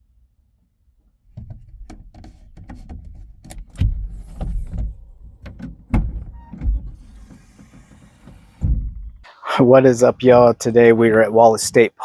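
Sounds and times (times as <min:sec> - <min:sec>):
irregular clicks and clunks: 0:01.1 - 0:09.3
heavy thuds: 0:01.3 - 0:09.3
low rumble: 0:04.0 - 0:09.3.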